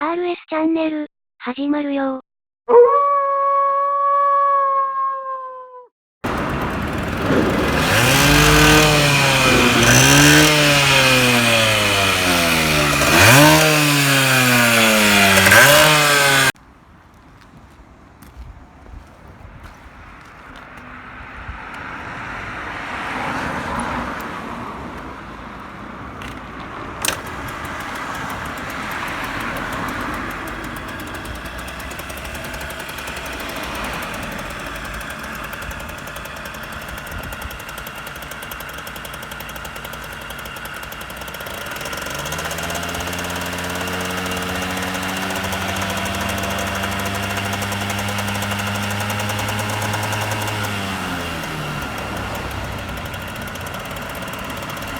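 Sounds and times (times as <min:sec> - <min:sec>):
two-stroke engine running: 0:06.2 - 0:16.6, 0:23.1 - 0:54.9.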